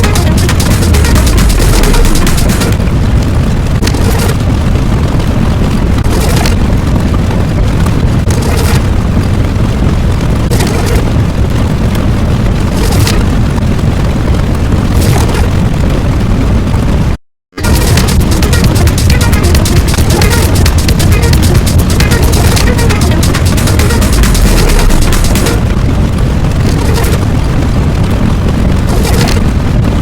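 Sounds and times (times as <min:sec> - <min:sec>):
deep rumble: 0:00.0 - 0:30.0.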